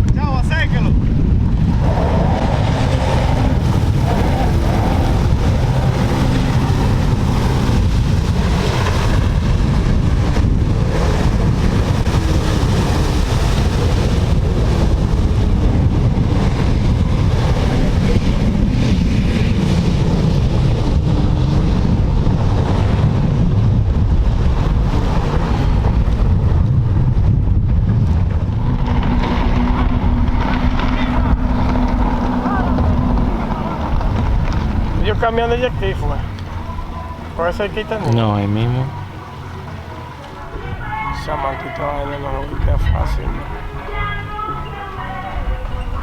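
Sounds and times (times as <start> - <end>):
jet ski engine running: 0.0 - 46.0
wind buffeting microphone: 0.0 - 46.0.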